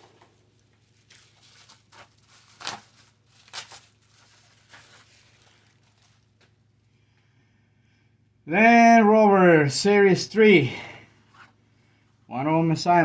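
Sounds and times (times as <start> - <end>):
plastic packaging crinkling: 0.1 - 6.6.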